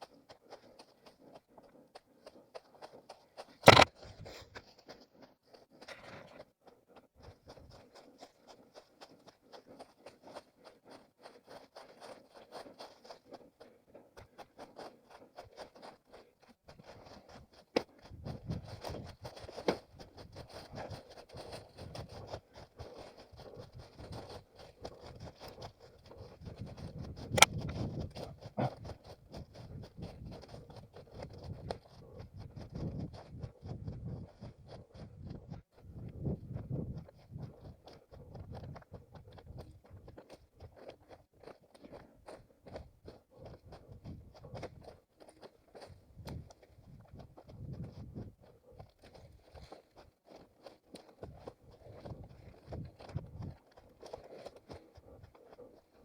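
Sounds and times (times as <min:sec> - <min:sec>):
small ticks and crackles: 0:48.5 - 0:56.0.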